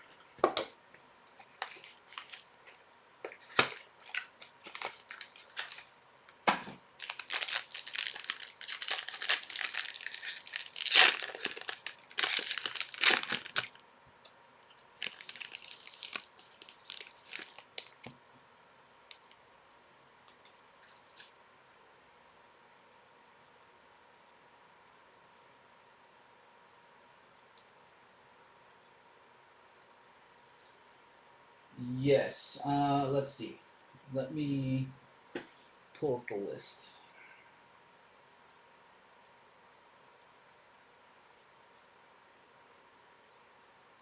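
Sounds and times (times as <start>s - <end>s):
plastic wrapping tearing and crinkling: 1.3s - 5.9s, 7.0s - 13.8s, 14.7s - 18.1s.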